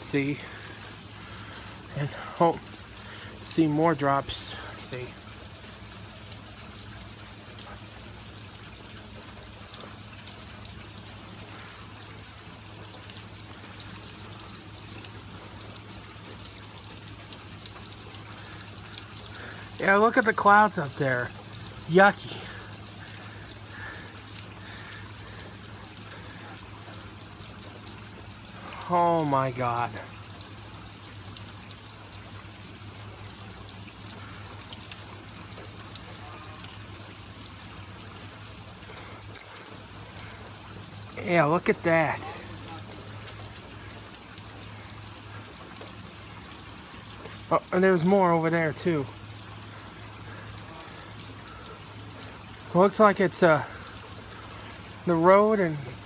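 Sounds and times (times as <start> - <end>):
light rain: 0.0 - 56.0
water trickling and dripping: 0.0 - 56.0.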